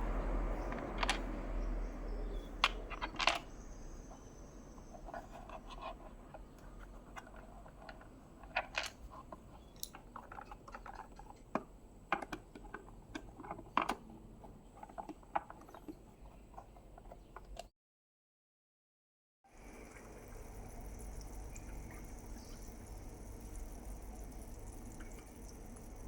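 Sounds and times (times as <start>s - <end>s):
faint steady hum: 0.0s - 17.6s, 19.5s - 26.0s
small hard objects clicking: 0.7s - 1.3s.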